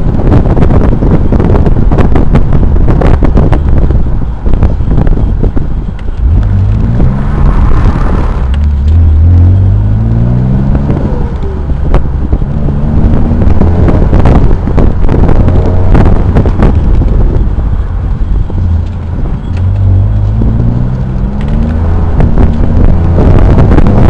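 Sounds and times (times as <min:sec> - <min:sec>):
low rumble and thumps: 0:00.0 - 0:24.0
car engine revving hard: 0:06.2 - 0:24.0.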